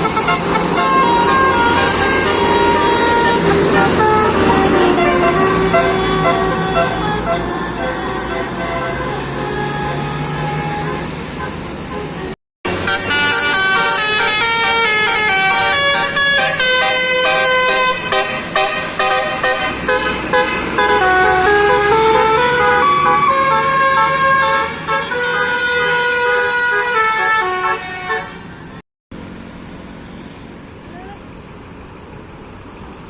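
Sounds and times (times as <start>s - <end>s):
melodic bus air horn: 0.0s - 28.5s.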